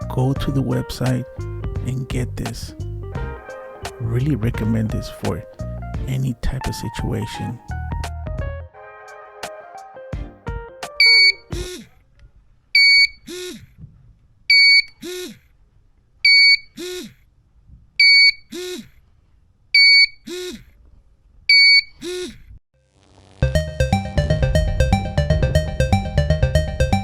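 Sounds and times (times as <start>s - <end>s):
alarm high beeps: 11.0s - 11.7s
buzz rising and falling in pitch: 22.0s - 27.0s.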